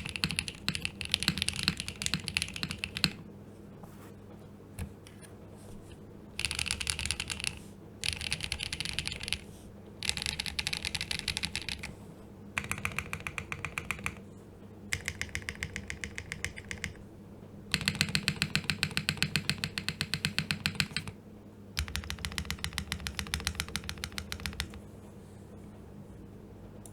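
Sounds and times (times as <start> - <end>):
mechanical keyboard typing: 0.0 - 3.2, 6.4 - 12.0, 12.6 - 14.2, 14.9 - 17.0, 17.7 - 21.2, 21.8 - 24.8.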